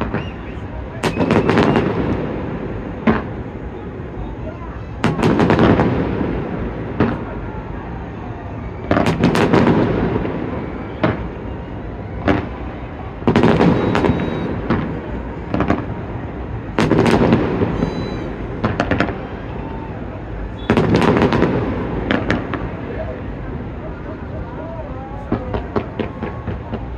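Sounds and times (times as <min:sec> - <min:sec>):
fireworks booming and cracking: 0:00.0 - 0:24.3, 0:25.2 - 0:26.9.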